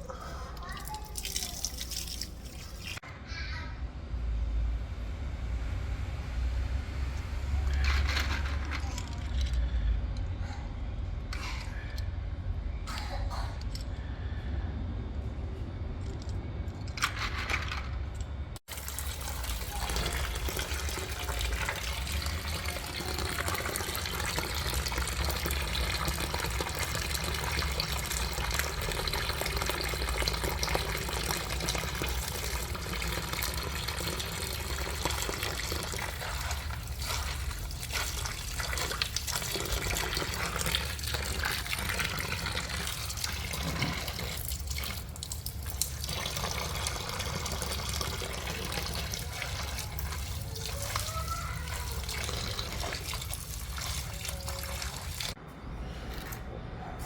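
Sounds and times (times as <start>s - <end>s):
tap water splashing in a sink: 0.6s - 3.0s, 18.7s - 55.4s.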